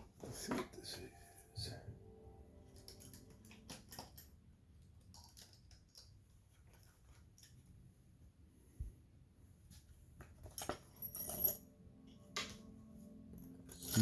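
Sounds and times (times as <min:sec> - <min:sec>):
small tools clicking and tapping: 0:02.8 - 0:07.6.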